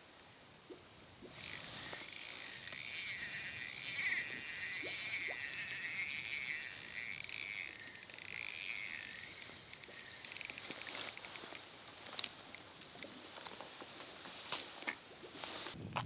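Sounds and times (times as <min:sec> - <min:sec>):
fishing reel whirring: 0:01.3 - 0:11.6.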